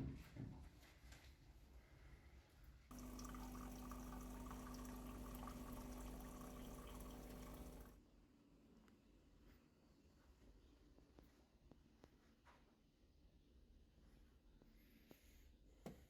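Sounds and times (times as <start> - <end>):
water running from a tap: 2.9 - 8.0.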